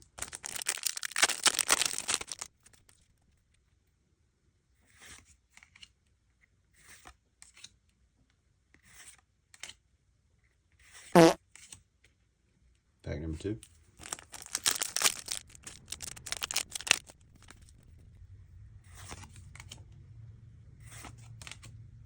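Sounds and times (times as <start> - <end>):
foil pack tearing: 0.0 - 2.5, 14.0 - 17.7.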